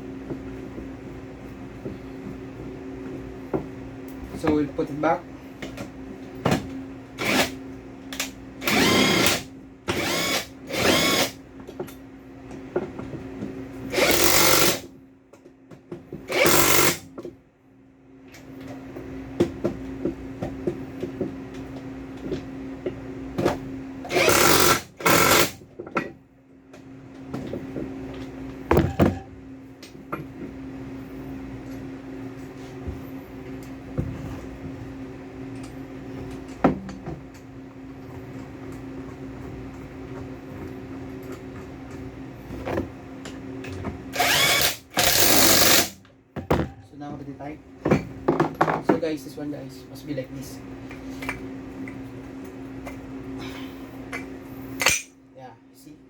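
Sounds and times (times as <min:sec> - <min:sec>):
steady low hum: 0:00.0 - 0:56.0
impact wrench bursts: 0:07.2 - 0:07.6, 0:08.6 - 0:11.4, 0:13.9 - 0:14.9, 0:16.3 - 0:17.1, 0:24.1 - 0:25.6, 0:44.2 - 0:46.0.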